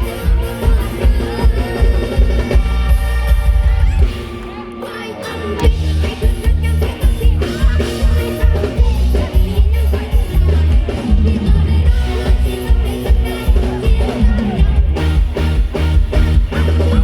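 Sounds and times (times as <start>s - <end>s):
person singing: 0.0s - 15.2s
music with heavy bass beat: 5.6s - 17.0s.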